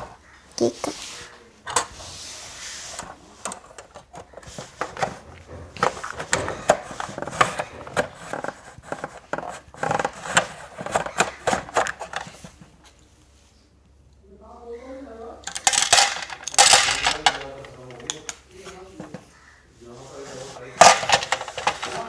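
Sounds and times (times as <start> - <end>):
plastic toy pieces clicking: 15.5 - 18.4, 20.8 - 22.0.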